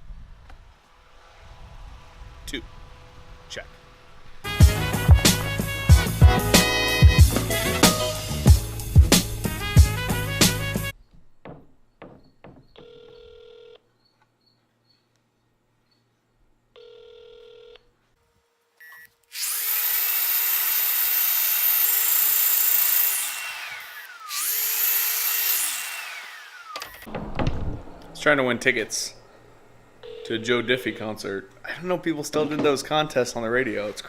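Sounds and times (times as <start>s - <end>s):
telephone ringback tone: 16.8s - 17.8s, 30.0s - 31.0s.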